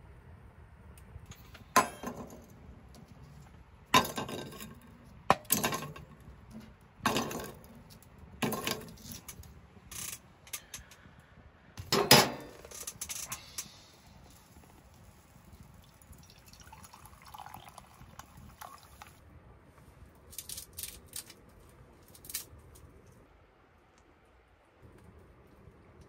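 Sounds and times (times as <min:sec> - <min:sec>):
dishes and utensils clinking: 0:01.3 - 0:02.4.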